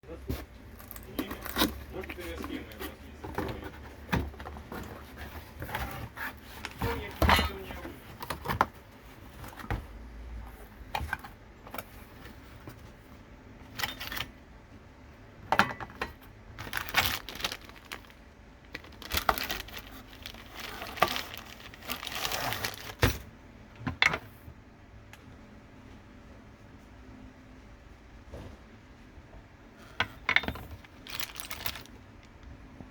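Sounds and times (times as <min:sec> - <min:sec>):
metal chain clinking and rattling: 0:31.1 - 0:31.9.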